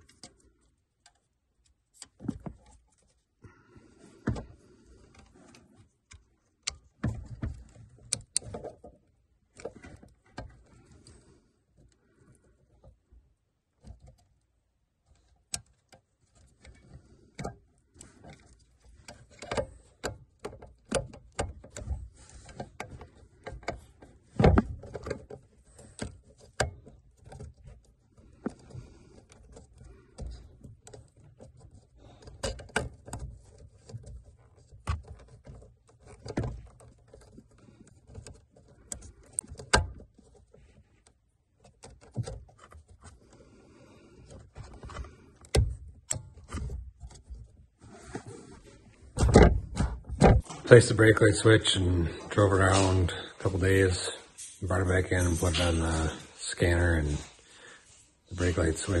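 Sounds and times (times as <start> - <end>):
tools clicking on plastic parts: 4.2 - 11.2, 13.7 - 48.2.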